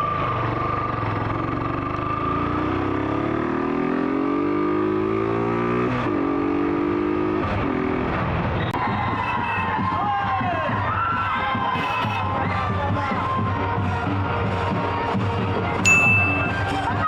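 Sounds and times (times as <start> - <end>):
motorcycle engine accelerating: 0.0 - 8.6.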